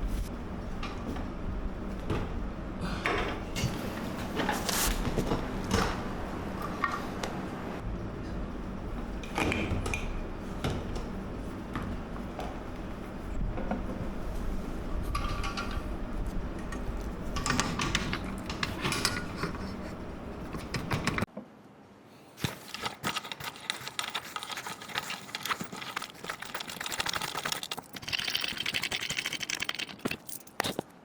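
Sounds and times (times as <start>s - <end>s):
steady low hum: 0.0s - 21.3s.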